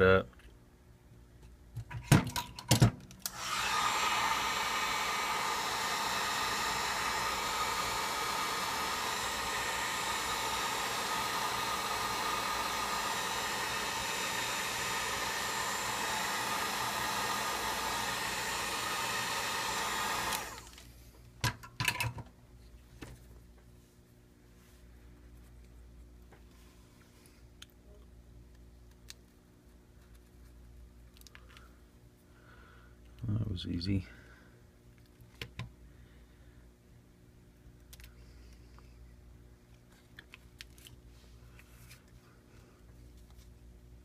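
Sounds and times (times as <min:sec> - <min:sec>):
hot-air blower running: 0:03.2 - 0:20.9.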